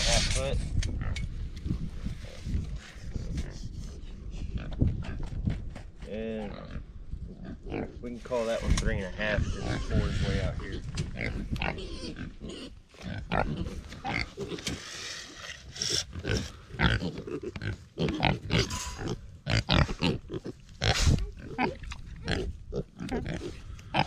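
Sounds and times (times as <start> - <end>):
pigs grunting: 6.3 - 24.0.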